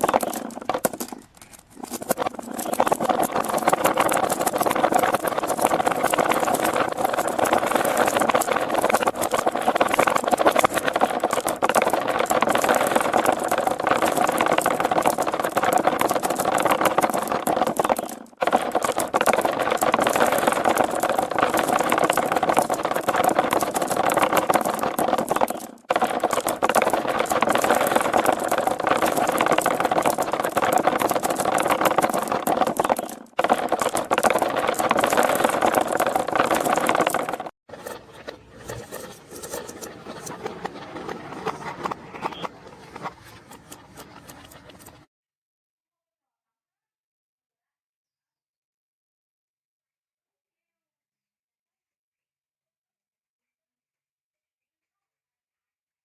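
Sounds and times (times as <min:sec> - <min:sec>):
marbles rattling down plastic track: 0:00.0 - 0:38.0, 0:38.6 - 0:45.1.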